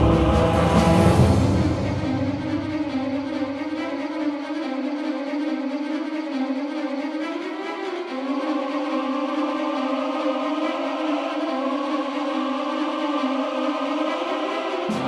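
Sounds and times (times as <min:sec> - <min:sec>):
low rumble: 0:00.0 - 0:03.7
string-like background music: 0:00.0 - 0:15.0.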